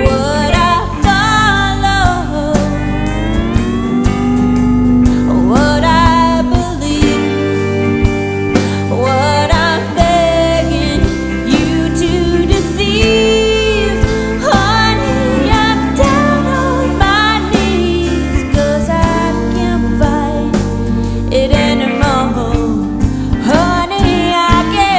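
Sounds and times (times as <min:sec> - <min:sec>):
lead vocal singing: 0:00.0 - 0:03.0, 0:08.6 - 0:24.9
band playing country rock: 0:00.0 - 0:24.9
guitars: 0:00.0 - 0:24.9
steady drum beat: 0:00.0 - 0:24.9.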